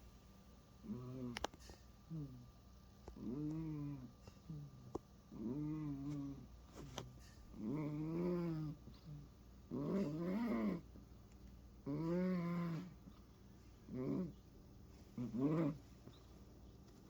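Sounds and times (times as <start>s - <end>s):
cat snoring: 11.8s - 12.9s.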